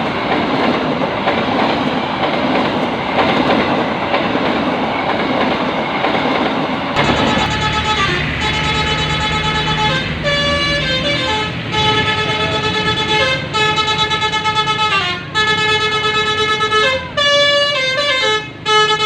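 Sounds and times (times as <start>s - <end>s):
engine rumble: 7.0s - 18.1s
musical air horn playing a tune: 7.0s - 19.0s.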